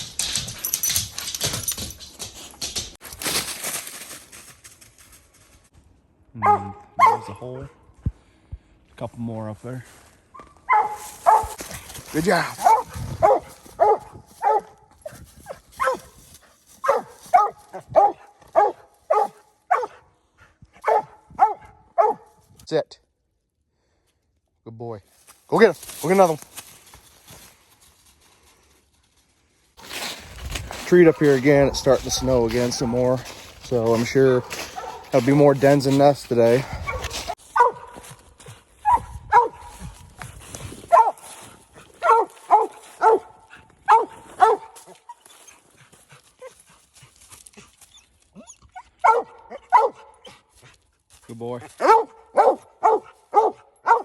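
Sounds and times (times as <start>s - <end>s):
dog barking: 6.4s - 7.4s, 10.4s - 11.6s, 12.6s - 16.2s, 16.8s - 20.1s, 20.8s - 22.4s, 31.7s - 33.1s, 34.4s - 35.2s, 36.8s - 38.1s, 38.8s - 39.9s, 40.9s - 41.3s, 42.0s - 45.0s, 49.0s - 50.3s, 51.8s - 54.0s.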